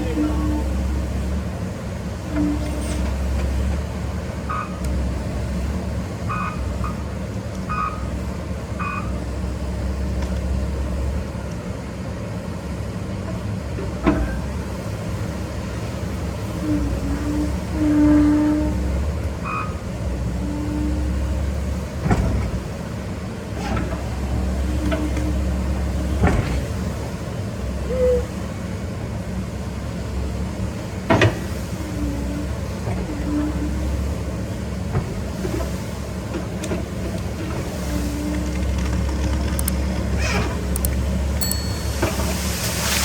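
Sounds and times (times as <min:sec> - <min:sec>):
hydraulic whines: 0:00.0 - 0:09.2, 0:15.7 - 0:22.8, 0:31.1 - 0:43.0
excavator diesel engine running: 0:00.0 - 0:43.0.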